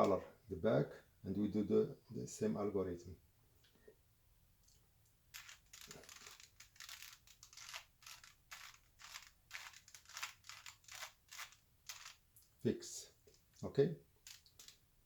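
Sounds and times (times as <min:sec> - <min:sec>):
puzzle cube clicking as turned: 0:05.4 - 0:12.2, 0:14.2 - 0:14.8.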